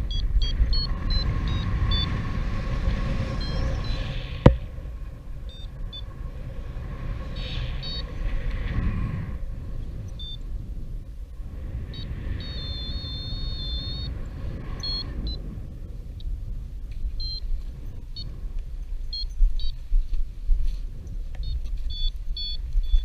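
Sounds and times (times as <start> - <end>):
high-pitched beeps: 0.0 - 2.1, 3.4 - 4.6, 5.5 - 6.1, 7.8 - 8.1, 10.2 - 10.4, 12.0 - 14.1, 14.8 - 15.4
wind buffeting microphone: 0.0 - 23.0.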